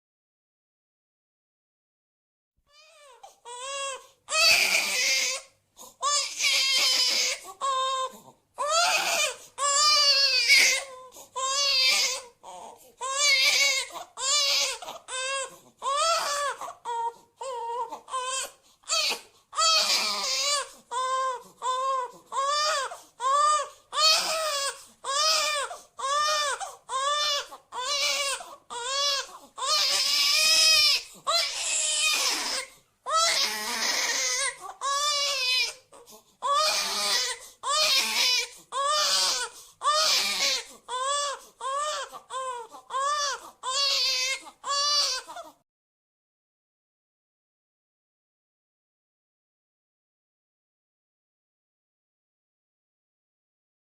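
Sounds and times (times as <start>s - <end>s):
baby crying: 2.7s - 45.6s.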